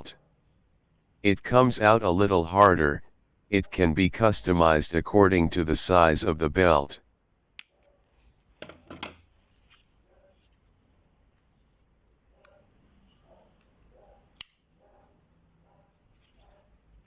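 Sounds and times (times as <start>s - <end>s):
plastic sheath clicks: 14.3s - 14.7s.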